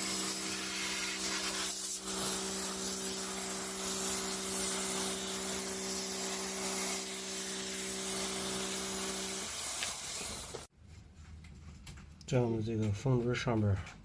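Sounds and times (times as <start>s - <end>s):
water spray hiss: 0.0s - 10.7s.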